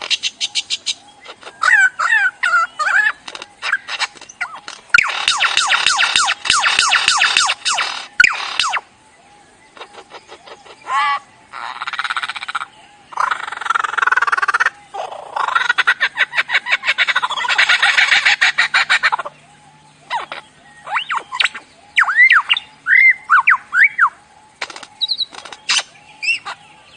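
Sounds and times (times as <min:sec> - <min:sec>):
bird squawking and whistling: 0:00.1 - 0:08.9, 0:20.1 - 0:24.2.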